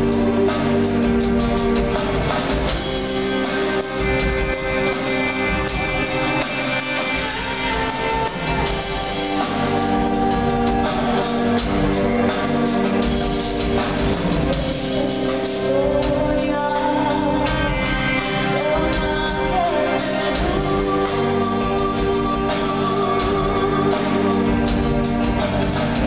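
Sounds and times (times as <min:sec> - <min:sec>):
drums: 0:00.0 - 0:26.0
guitars holding chords: 0:00.0 - 0:26.0
person singing: 0:14.8 - 0:24.7.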